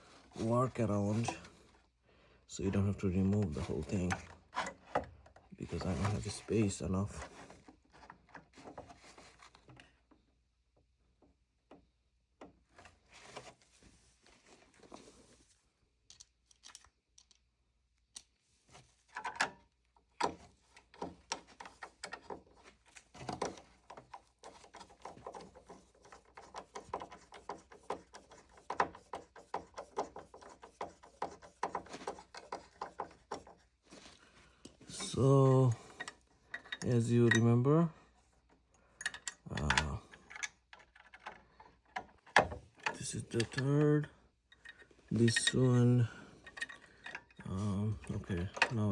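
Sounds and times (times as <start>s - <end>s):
tools clicking and tapping: 20.2s - 33.7s, 35.7s - 37.5s, 38.9s - 43.8s, 44.5s - 48.8s.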